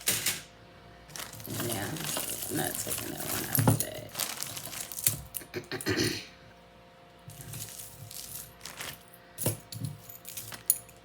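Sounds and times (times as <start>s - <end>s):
metal jewelry clinking: 1.1s - 5.5s, 7.3s - 11.0s.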